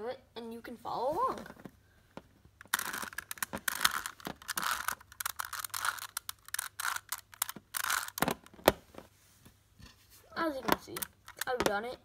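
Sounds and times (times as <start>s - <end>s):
puzzle cube twisting clicks: 2.6s - 8.8s, 10.6s - 11.7s.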